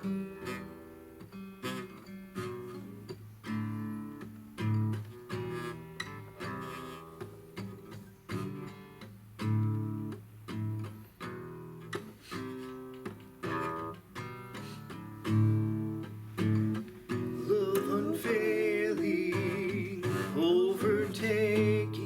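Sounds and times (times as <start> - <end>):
acoustic guitar strummed chords: 0.0 - 22.0
person singing: 17.3 - 22.0.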